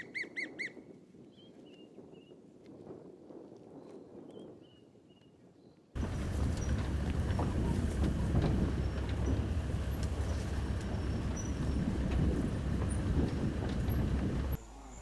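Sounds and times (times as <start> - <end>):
vehicle rumble on rough ground: 6.0 - 15.0.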